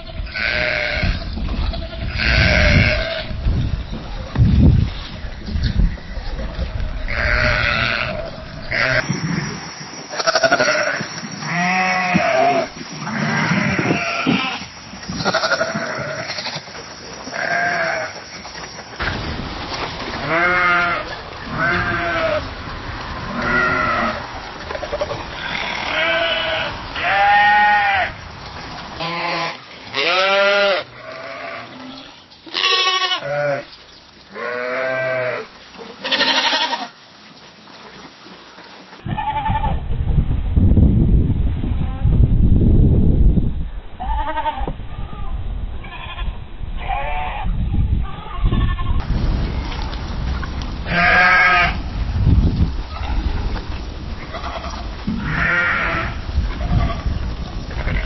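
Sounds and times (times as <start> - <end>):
sheep bleating: 0.0 - 3.3, 7.1 - 9.1, 10.1 - 16.7, 17.3 - 18.2, 20.2 - 22.4, 23.3 - 24.2, 24.8 - 28.1, 29.0 - 33.7, 34.3 - 37.0, 50.9 - 51.8, 54.3 - 57.1.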